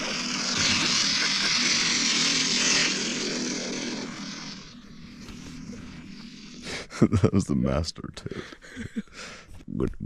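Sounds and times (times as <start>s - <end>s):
chorus of toads calling: 0.0s - 7.0s.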